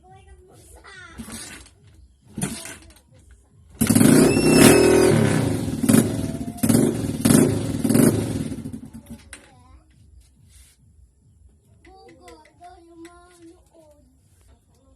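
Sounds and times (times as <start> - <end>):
motorcycle engine revving: 1.2 - 2.8, 3.7 - 9.2.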